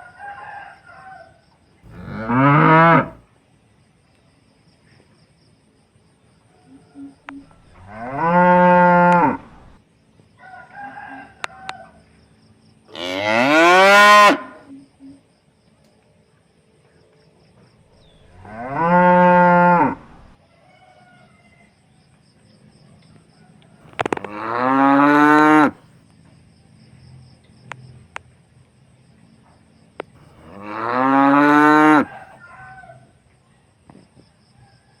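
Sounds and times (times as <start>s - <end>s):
cows mooing: 1.9s - 3.2s, 7.6s - 9.8s, 13.0s - 14.4s, 18.2s - 20.4s, 24.0s - 25.8s, 30.3s - 32.2s
faint clicks: 23.0s - 24.4s.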